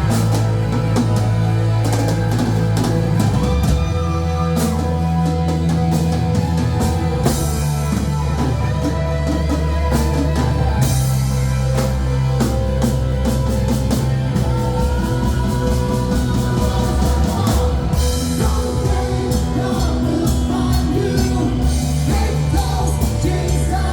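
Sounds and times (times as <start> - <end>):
bass: 0.0 - 23.9
drum kit: 0.0 - 23.9
guitar: 0.0 - 23.9
person singing: 13.9 - 23.9.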